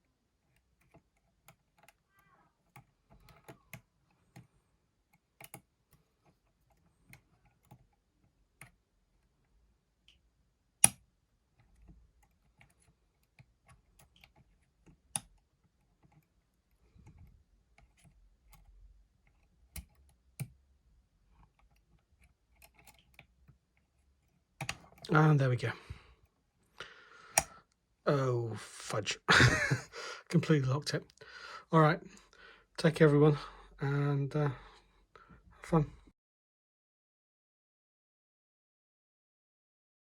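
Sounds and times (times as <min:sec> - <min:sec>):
lock pick clicking in lock: 0:10.8 - 0:11.0.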